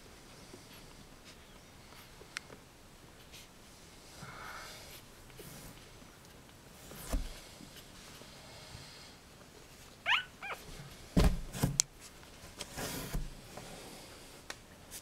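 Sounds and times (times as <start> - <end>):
rustling: 0.1 - 15.0
puppy squealing: 10.0 - 10.6
dull thumps: 11.2 - 11.8.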